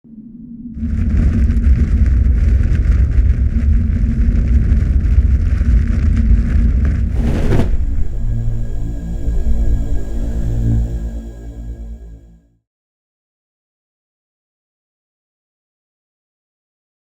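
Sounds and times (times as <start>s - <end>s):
short falling whoosh: 7.1s - 10.3s
loud low rumble with hiss: 7.1s - 11.6s.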